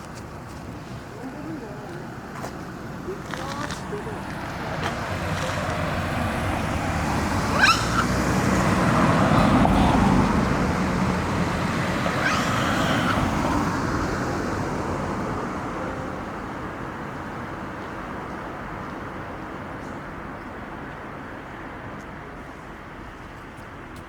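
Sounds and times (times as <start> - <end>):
vehicle passing: 0.8 - 16.5
monkey high rising calls: 7.2 - 8.8, 11.3 - 13.8.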